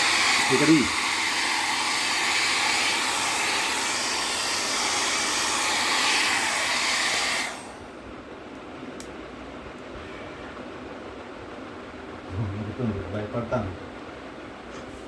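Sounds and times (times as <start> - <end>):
hair dryer blowing: 0.0 - 8.0.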